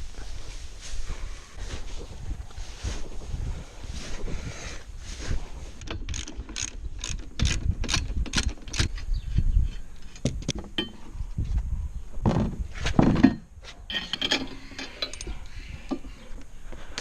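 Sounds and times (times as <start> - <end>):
sharp mechanical clicks: 5.8 - 9.0.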